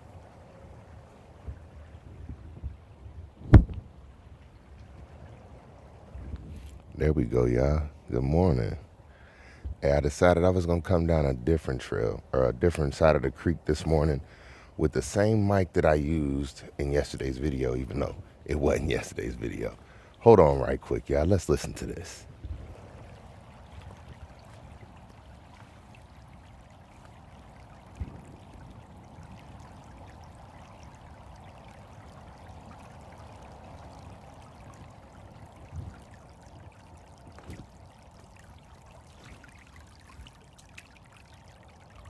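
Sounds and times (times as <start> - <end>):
creek water flowing: 0.0 - 42.0
soft low thumps: 3.4 - 3.9.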